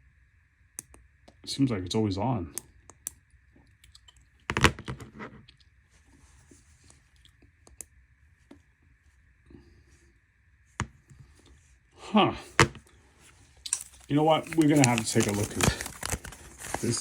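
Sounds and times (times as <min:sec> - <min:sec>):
light handling: 0:13.6 - 0:17.0.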